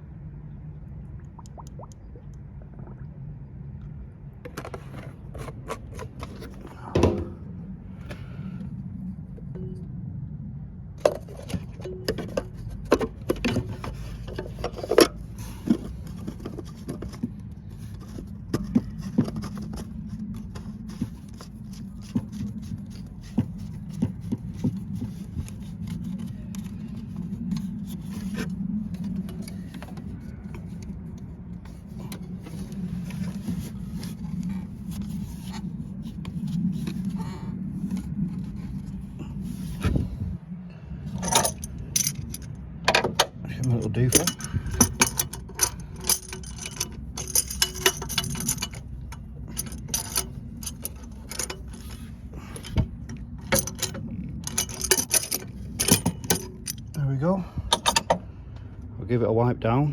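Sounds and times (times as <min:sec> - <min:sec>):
steady low hum: 0:00.0 - 0:59.9
metallic clicks and knocks of tools: 0:44.1 - 0:52.0, 0:53.4 - 0:56.9, 0:57.7 - 0:58.2.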